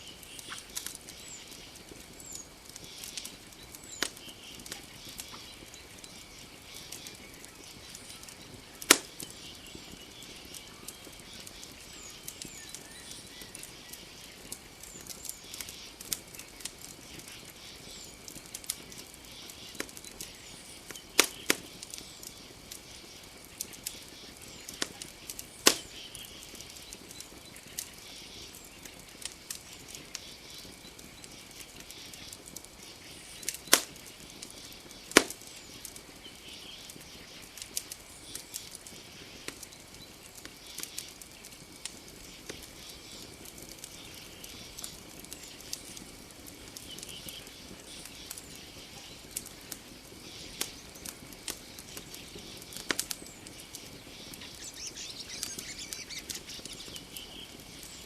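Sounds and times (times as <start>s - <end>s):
campfire crackling: 0.0s - 58.0s
loud pops of fire: 0.1s - 58.0s.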